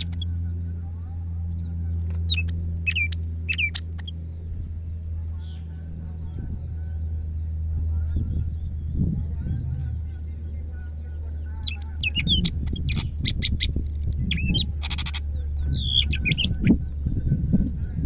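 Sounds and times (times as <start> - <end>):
bird whistled song: 0.0 - 0.3, 2.2 - 4.2, 11.3 - 17.0
steady low hum: 0.0 - 18.0.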